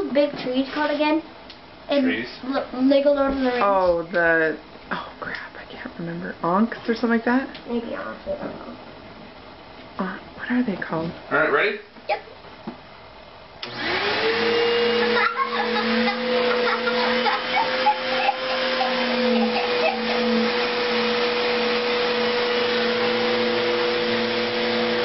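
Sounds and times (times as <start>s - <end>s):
vacuum cleaner motor whine: 13.6s - 25.0s.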